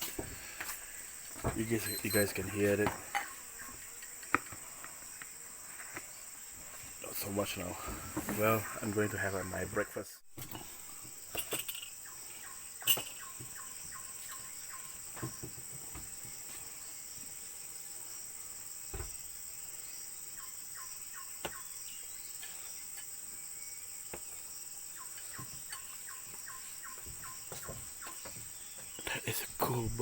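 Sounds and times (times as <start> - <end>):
insect chorus buzzing: 0.0 - 30.0.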